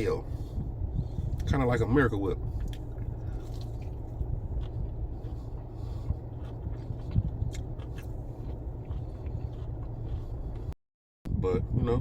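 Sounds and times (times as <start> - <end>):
low rumble: 0.0 - 12.0
person chewing food: 2.4 - 10.8.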